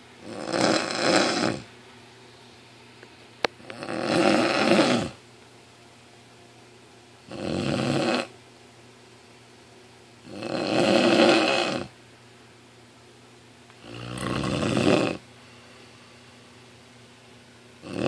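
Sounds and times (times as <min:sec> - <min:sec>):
person snoring: 0:00.2 - 0:01.7, 0:03.7 - 0:05.2, 0:07.3 - 0:08.3, 0:10.3 - 0:11.9, 0:13.8 - 0:15.2
quiet breathing: 0:15.3 - 0:16.5.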